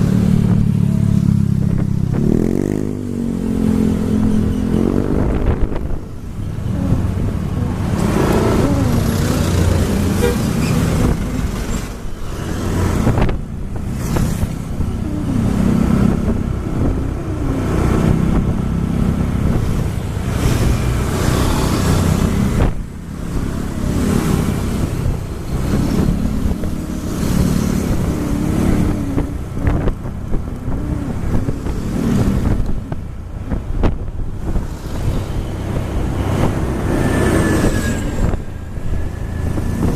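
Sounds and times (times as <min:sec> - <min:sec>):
road and wind noise: 0:00.0 - 0:39.9
engine running: 0:04.1 - 0:39.9.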